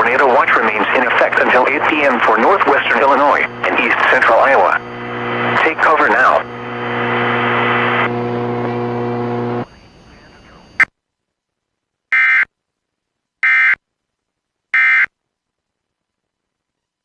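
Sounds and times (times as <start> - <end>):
digital data bursts: 0.0 - 7.1
radio hum and static: 0.0 - 11.0.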